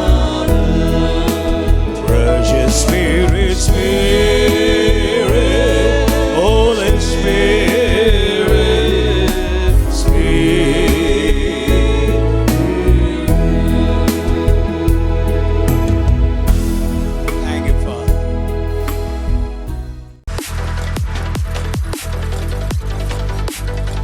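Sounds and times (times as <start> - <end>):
person singing: 0.0 - 15.7
band playing worship music: 0.0 - 20.2.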